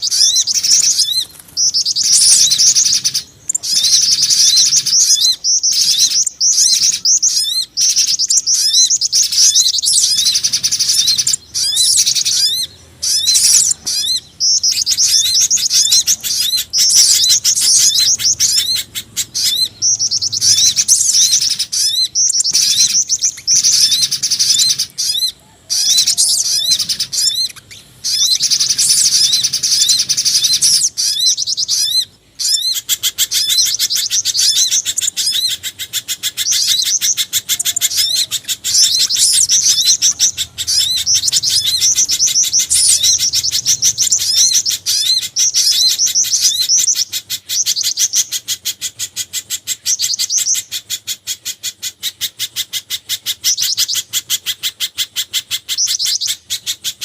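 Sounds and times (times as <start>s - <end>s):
small birds chirping and trilling: 0.0s - 57.0s.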